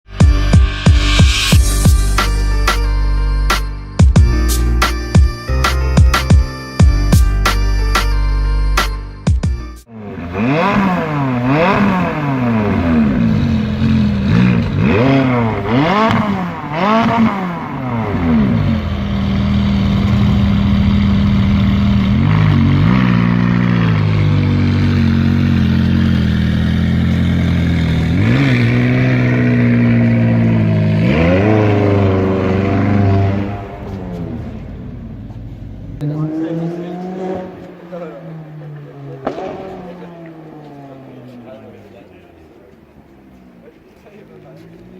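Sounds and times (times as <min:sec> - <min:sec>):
car exhaust revving and idling: 0:09.8 - 0:44.9.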